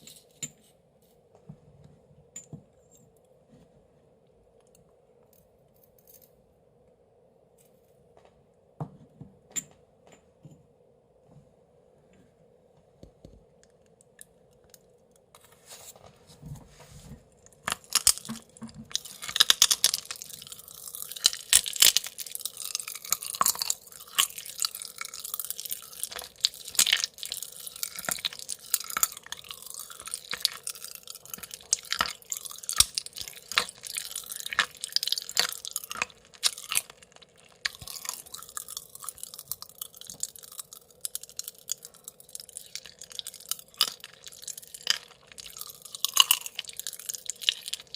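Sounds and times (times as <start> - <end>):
chewing and crunching: 17.3 - 47.9
popping candy crackling: 17.5 - 47.9.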